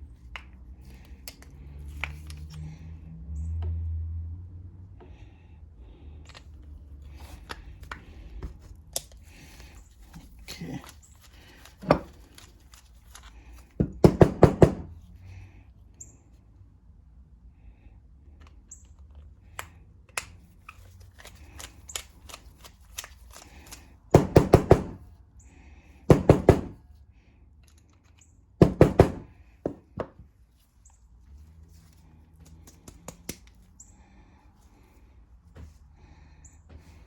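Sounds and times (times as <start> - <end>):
small metal parts clicking: 8.9 - 13.6, 18.4 - 24.0, 27.6 - 28.4.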